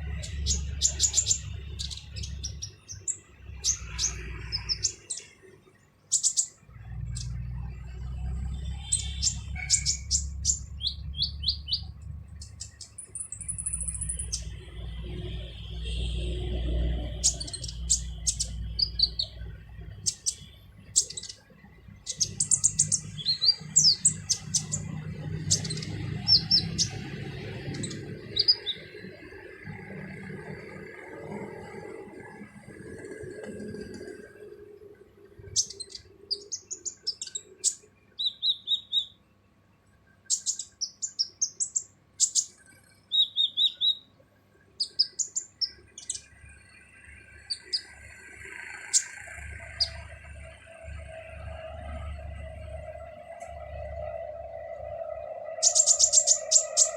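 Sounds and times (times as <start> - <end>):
sunbird chirping and trilling: 0.0 - 56.9.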